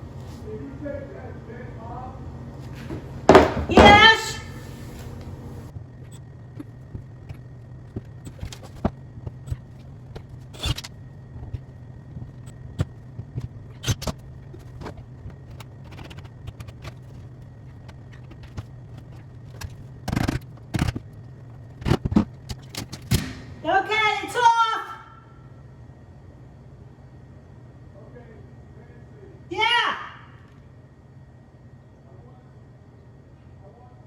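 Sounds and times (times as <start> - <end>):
steady low hum: 0.0 - 34.0
sharp knocks: 3.3 - 4.3
metal parts clicking and clinking: 8.2 - 11.5.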